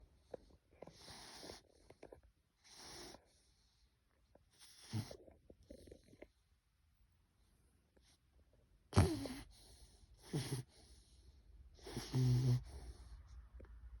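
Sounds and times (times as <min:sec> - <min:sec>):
puppy snoring softly: 0:00.2 - 0:06.4, 0:08.9 - 0:13.6.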